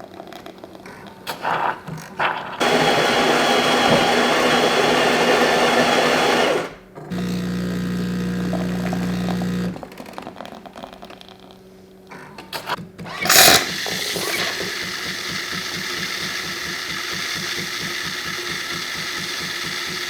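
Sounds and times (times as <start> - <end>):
espresso machine pump buzzing: 2.6 - 9.9, 13.1 - 20.0
coffee grinder running: 2.6 - 10.0, 13.1 - 20.0.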